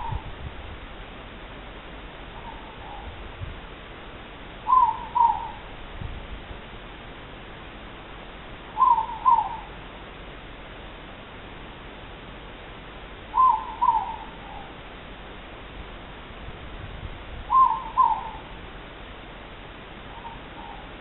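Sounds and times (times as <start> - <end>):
owl two-note hoot: 4.6 - 5.6, 8.8 - 9.7, 13.3 - 14.7, 17.5 - 18.5.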